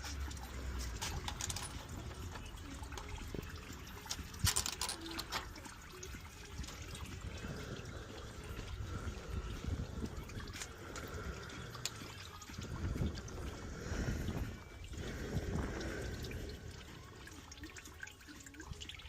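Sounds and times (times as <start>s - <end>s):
coolant trickling from radiator: 0.0s - 19.0s.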